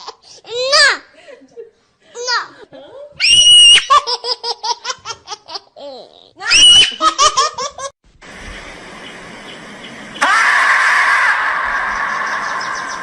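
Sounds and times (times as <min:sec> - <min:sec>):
baby laughing: 0:03.9 - 0:07.9
faint steady hiss: 0:08.1 - 0:10.2.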